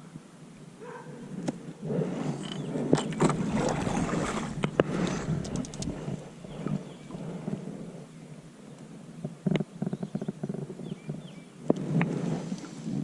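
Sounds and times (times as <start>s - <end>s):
paddle splashing water: 2.0s - 7.7s
light clicks: 5.4s - 5.9s.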